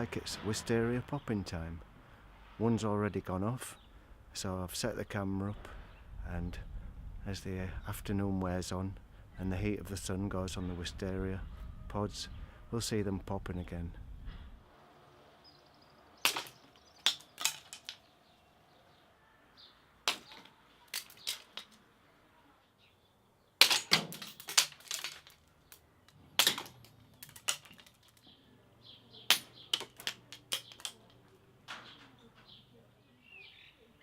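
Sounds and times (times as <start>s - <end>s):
seed pods bursting with cracks: 16.2s - 18.1s, 20.0s - 21.8s, 23.6s - 28.4s, 29.2s - 31.2s.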